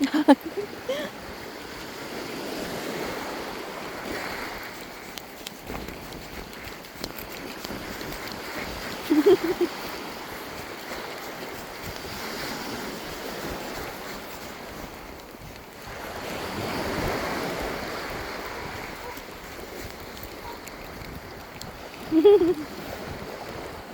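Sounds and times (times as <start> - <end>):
sea waves washing on shore: 0.0 - 23.9
wind buffeting microphone: 0.0 - 23.9.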